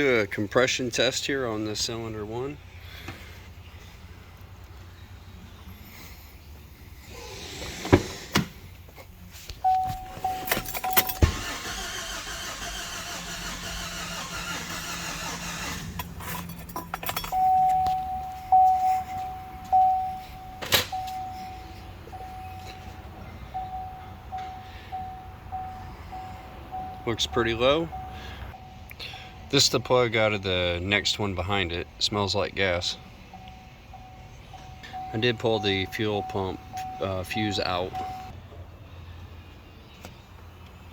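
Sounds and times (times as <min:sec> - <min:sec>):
starter cranking engine: 0:10.9 - 0:16.3
warning chime tone: 0:17.1 - 0:30.1, 0:33.4 - 0:38.3.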